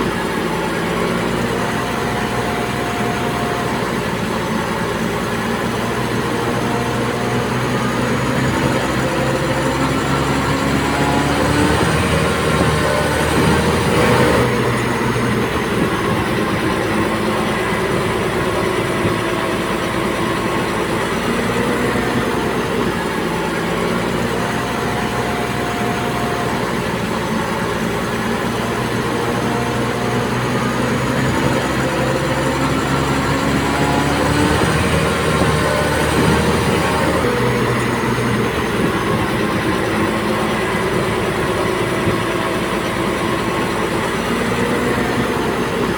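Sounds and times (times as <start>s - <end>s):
bulldozer diesel engine running: 0.0s - 45.9s.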